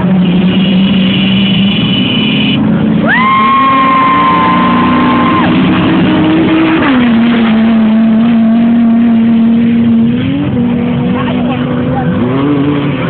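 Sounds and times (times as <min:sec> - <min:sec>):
race engine revving: 0:00.0 - 0:13.0.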